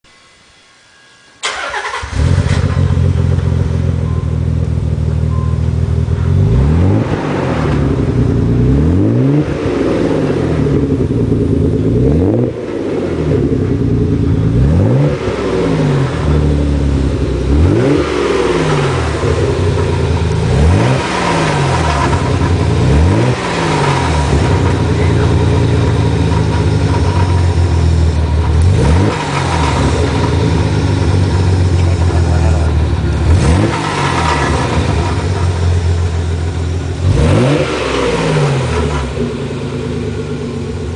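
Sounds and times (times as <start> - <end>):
engine clicking: 1.4 - 3.2
car engine revving: 1.4 - 40.9.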